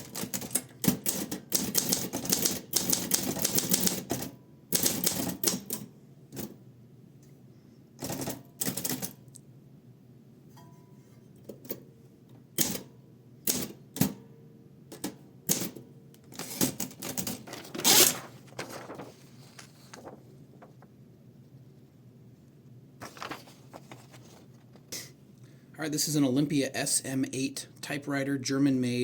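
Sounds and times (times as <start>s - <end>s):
typewriter keystrokes clacking: 0.0s - 5.8s.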